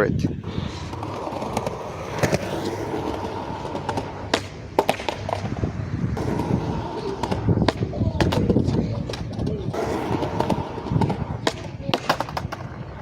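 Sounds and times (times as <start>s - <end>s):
skateboard wheels rolling: 0.3s - 13.0s
skateboard popping and landing: 0.4s - 13.0s.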